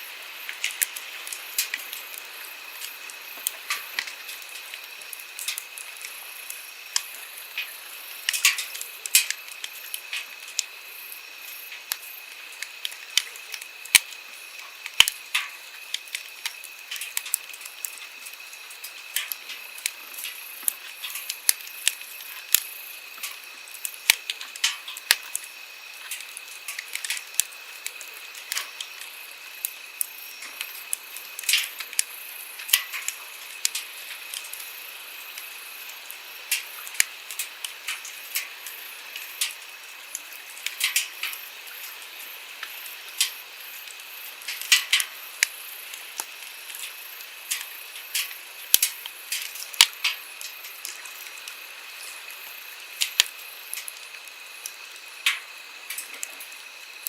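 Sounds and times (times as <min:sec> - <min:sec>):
campfire crackling and popping: 0:00.0 - 0:57.0.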